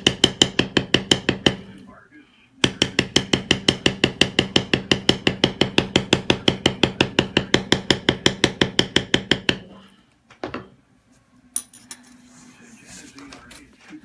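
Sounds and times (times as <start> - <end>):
mallet tapping stamping tool: 0.0 - 1.6, 2.6 - 9.7.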